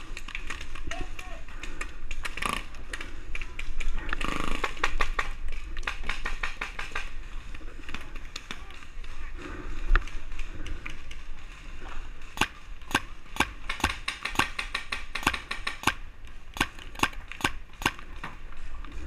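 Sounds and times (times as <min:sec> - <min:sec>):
paintball markers firing: 0:00.0 - 0:07.2, 0:12.3 - 0:18.3.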